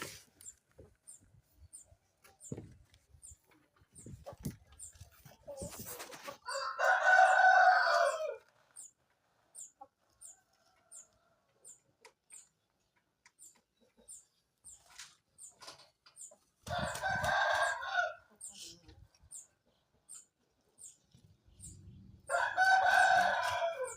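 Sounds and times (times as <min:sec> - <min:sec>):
rooster crowing: 0:06.4 - 0:08.4, 0:16.7 - 0:18.2, 0:22.3 - 0:23.9.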